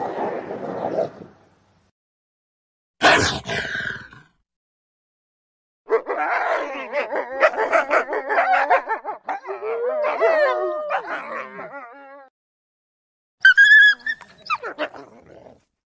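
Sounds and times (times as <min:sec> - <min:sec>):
wolves howling and yipping: 0:05.9 - 0:12.3, 0:13.4 - 0:15.3.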